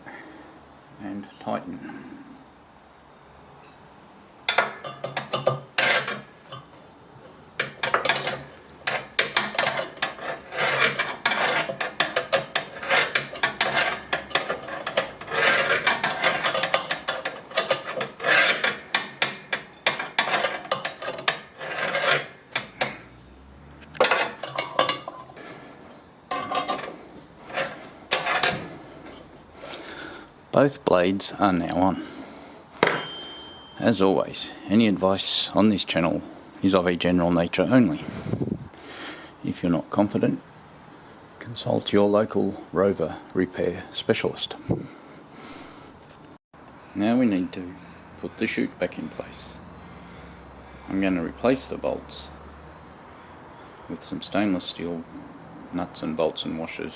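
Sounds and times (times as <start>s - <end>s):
spanner scraping and clicking: 4.5s - 6.8s, 7.6s - 23.1s, 23.8s - 25.4s, 26.3s - 29.3s.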